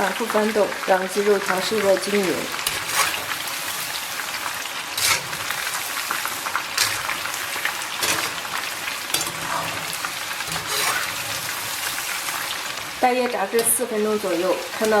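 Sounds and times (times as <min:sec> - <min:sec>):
food sizzling in hot oil: 0:00.0 - 0:15.0.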